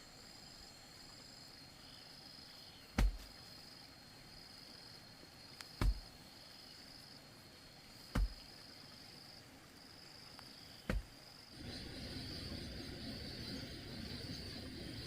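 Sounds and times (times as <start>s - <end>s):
insects trilling: 0.0s - 15.0s
sharp thuds: 2.9s - 3.4s, 5.8s - 6.1s, 8.1s - 8.4s, 10.8s - 11.2s.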